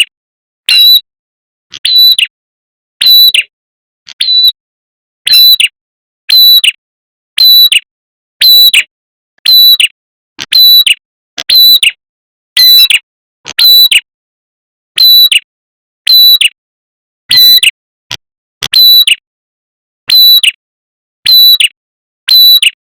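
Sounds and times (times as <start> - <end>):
bird chirping call: 0.7 - 1.0, 1.8 - 2.3, 4.2 - 4.6.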